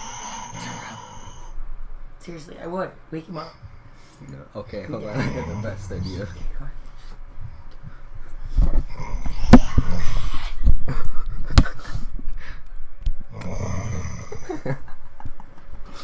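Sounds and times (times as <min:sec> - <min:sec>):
man snoring loudly: 0:00.0 - 0:01.5, 0:13.3 - 0:14.6.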